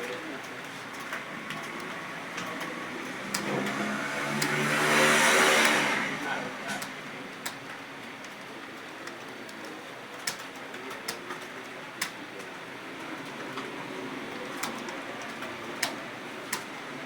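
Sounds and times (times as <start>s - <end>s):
keyboard typing clicks: 8.2s - 12.2s, 14.4s - 16.7s.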